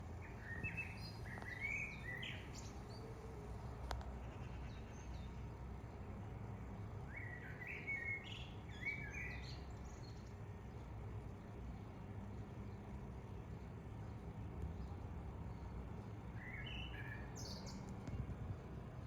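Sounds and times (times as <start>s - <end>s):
song thrush singing: 0.0s - 3.2s, 7.1s - 10.9s, 14.8s - 18.2s.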